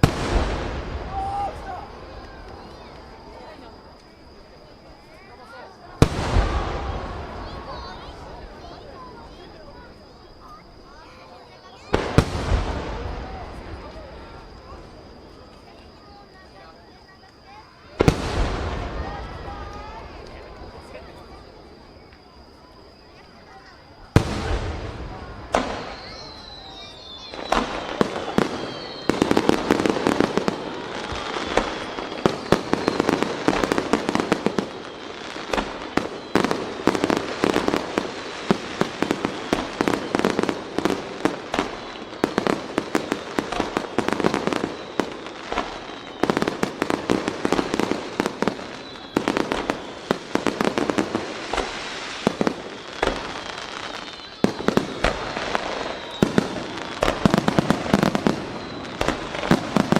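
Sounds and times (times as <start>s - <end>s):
firework shells bursting: 24.2s - 59.9s
high descending whistle: 25.1s - 33.7s.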